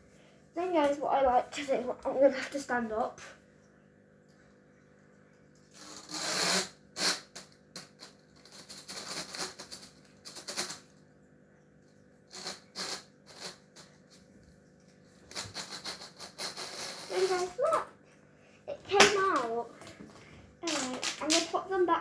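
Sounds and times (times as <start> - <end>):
fidget toys rustling and clicking: 15.3 - 17.8, 18.9 - 20.0, 20.6 - 21.8.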